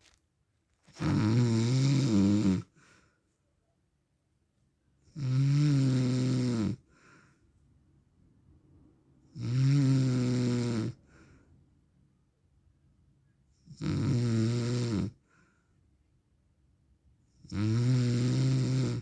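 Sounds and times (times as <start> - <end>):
man snoring: 1.0 - 2.7, 5.2 - 6.8, 9.4 - 11.0, 13.7 - 15.2, 17.5 - 19.0
faint breath out: 6.9 - 7.5.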